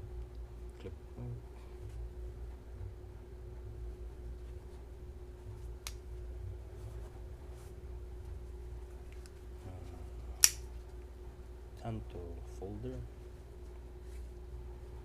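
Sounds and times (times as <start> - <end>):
steady low hum: 0.0 - 15.0
folding knife clicks: 10.4 - 10.7.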